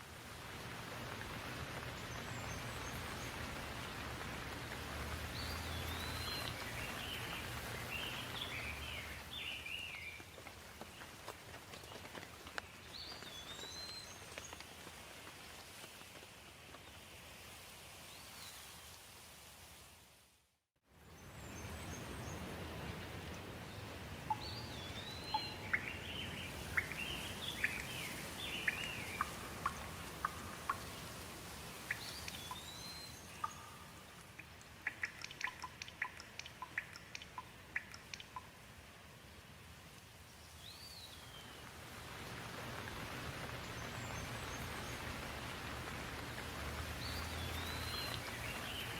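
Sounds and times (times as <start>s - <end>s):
steady rain: 0.0s - 48.9s
sharp drip-like ticks: 1.1s - 16.2s, 24.2s - 38.9s, 42.8s - 48.9s
birds singing: 5.3s - 10.2s, 24.3s - 30.9s, 47.0s - 48.9s.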